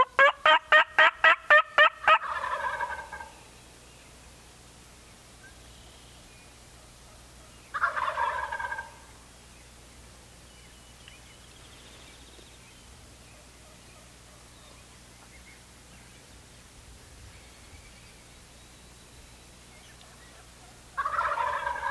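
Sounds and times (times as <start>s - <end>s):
turkey gobbling: 0.0s - 3.4s, 6.8s - 9.2s, 19.8s - 21.9s.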